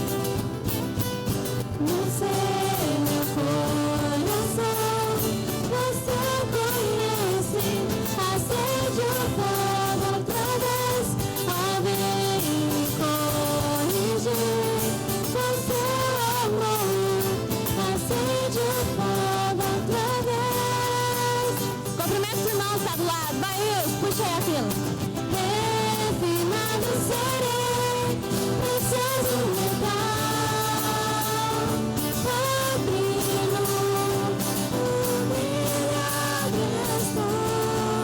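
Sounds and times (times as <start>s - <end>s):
drums: 0.0s - 4.6s
guitar: 0.0s - 38.0s
person singing: 1.7s - 24.7s, 25.3s - 38.0s.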